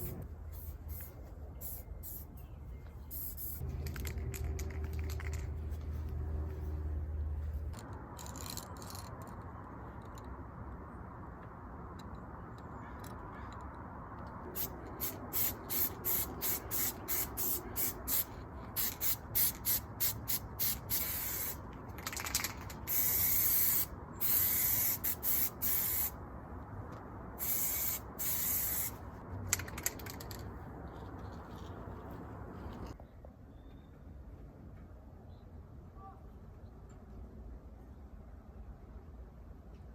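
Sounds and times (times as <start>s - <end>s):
spray paint can hissing: 0.0s - 2.3s, 3.1s - 5.4s, 14.6s - 26.2s, 27.4s - 30.4s.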